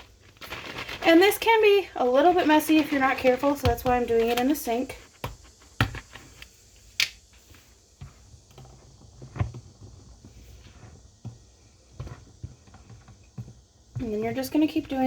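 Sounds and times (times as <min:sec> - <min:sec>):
water shaken in bottle: 0:00.0 - 0:03.6.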